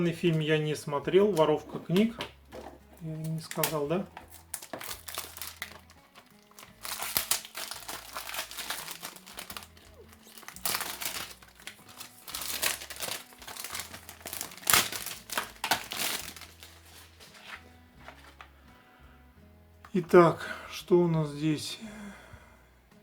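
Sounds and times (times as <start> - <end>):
plastic packaging crinkling: 1.2 - 18.4.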